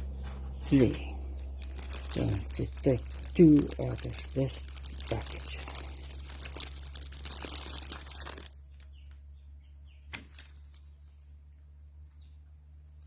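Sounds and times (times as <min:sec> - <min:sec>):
packaging crinkling and rustling: 0:00.0 - 0:09.3, 0:10.1 - 0:10.9
low steady hum: 0:00.0 - 0:13.0.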